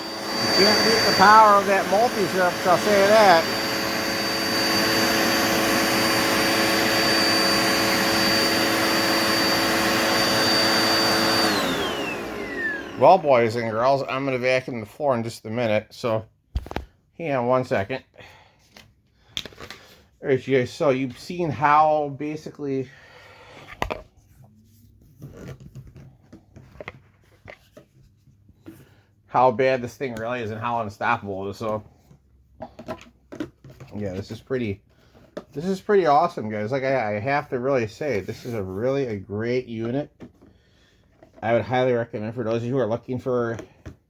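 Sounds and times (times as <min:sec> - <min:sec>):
upright vacuum cleaner running: 0:00.0 - 0:14.0.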